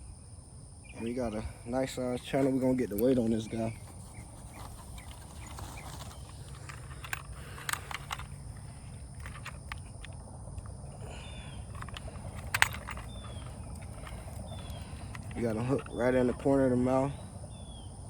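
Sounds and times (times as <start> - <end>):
high insect hum: 0.0 - 18.0
falling bird chirps: 8.6 - 18.0.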